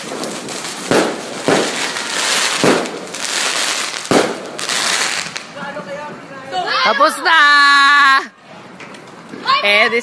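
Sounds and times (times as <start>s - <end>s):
fireworks bangs: 0.0s - 5.9s
firecrackers crackling: 0.0s - 6.2s.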